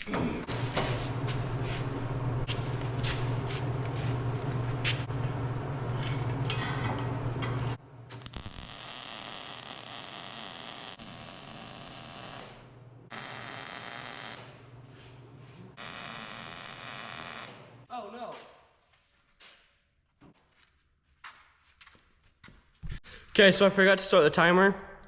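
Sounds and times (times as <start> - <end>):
arc welder buzzing and crackling: 7.1 - 14.8, 15.8 - 17.8.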